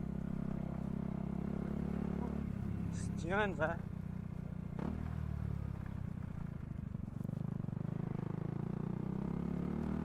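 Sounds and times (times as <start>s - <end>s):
motorcycle engine running: 0.0s - 10.0s.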